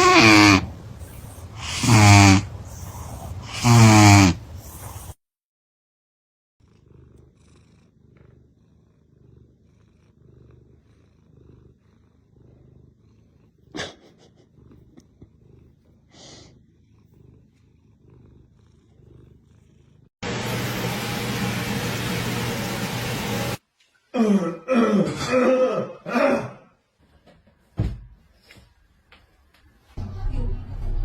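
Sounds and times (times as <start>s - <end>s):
cat purring: 0.0s - 5.2s, 6.6s - 20.1s.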